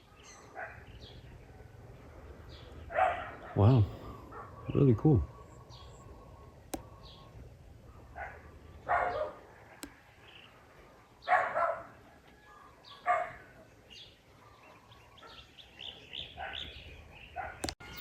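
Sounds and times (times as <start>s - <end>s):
dog barking: 0.1s - 0.9s, 2.9s - 5.4s, 8.1s - 9.4s, 11.2s - 12.0s, 12.9s - 13.6s, 14.5s - 15.5s, 16.3s - 17.7s.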